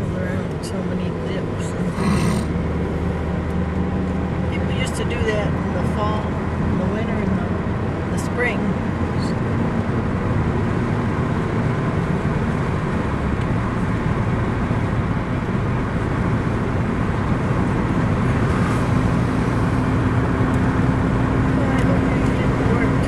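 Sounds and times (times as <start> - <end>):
car cabin road and engine noise: 0.0 - 23.0.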